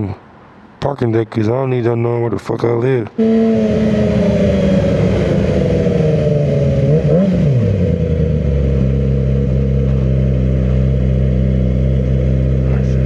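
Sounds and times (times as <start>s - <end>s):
motorcycle engine revving: 3.2s - 13.0s.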